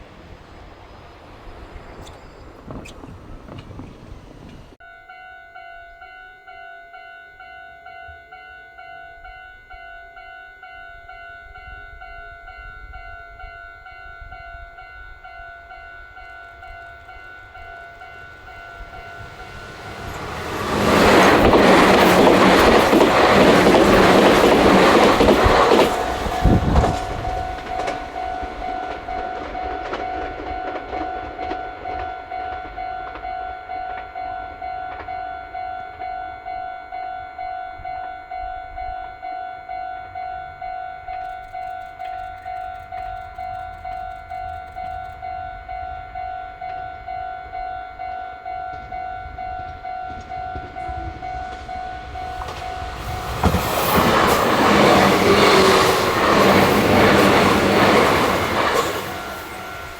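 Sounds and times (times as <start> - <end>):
train wheels rushing on rails: 0.0 - 4.8, 15.1 - 36.3, 41.2 - 59.9
electronic level-crossing bell: 4.8 - 59.9.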